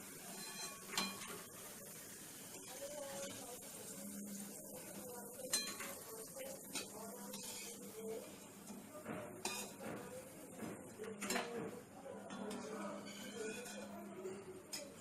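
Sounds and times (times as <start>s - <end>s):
metal utensil clinking on pan: 0.3s - 1.5s, 5.3s - 7.8s, 9.4s - 9.8s, 11.1s - 11.6s, 12.3s - 15.0s.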